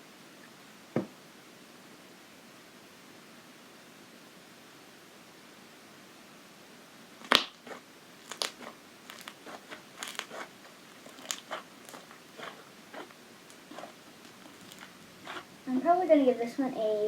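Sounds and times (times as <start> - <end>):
slime being squished: 7.2 - 15.6.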